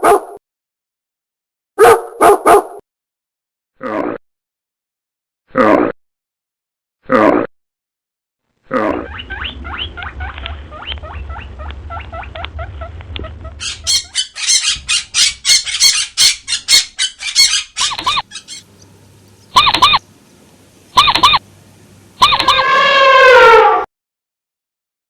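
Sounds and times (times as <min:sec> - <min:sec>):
loud wavering bird calls: 0:08.7 - 0:23.8
farm birds chirping: 0:09.0 - 0:23.0
shrill bird calls: 0:13.5 - 0:21.5, 0:22.2 - 0:23.8.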